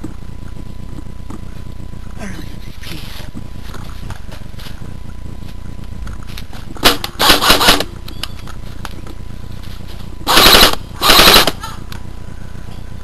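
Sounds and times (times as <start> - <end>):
airsoft rifle firing bursts: 6.8 - 8.0, 10.2 - 11.6.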